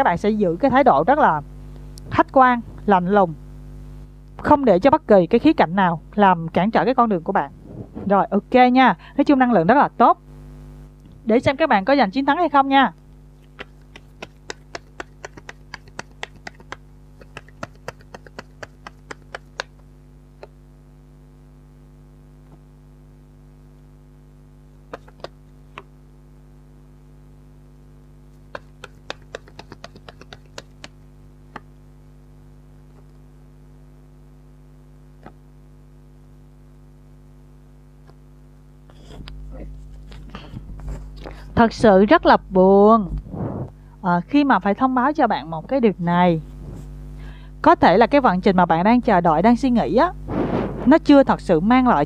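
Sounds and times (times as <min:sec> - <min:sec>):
low electrical hum: 0:00.0 - 0:52.0
cards shuffling and clicking: 0:13.4 - 0:19.8, 0:24.9 - 0:25.9, 0:28.3 - 0:31.7.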